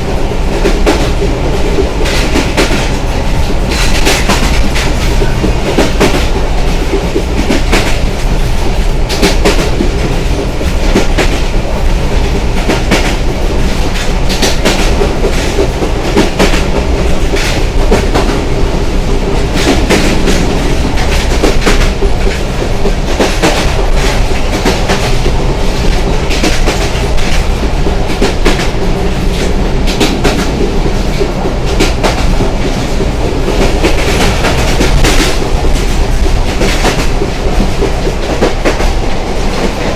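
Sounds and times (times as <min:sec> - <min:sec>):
train rumbling: 0:00.0 - 0:39.9
train wheels clattering on rails: 0:00.0 - 0:39.9.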